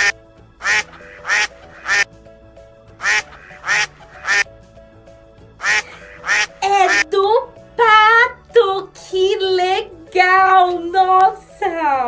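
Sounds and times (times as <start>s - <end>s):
duck quacking: 0.0s - 2.1s, 3.0s - 4.4s, 5.6s - 7.0s.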